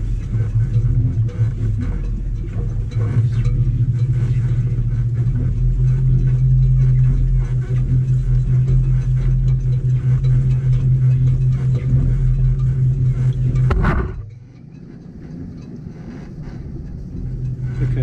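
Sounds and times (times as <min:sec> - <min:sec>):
electric boat motor humming: 0:00.0 - 0:18.0.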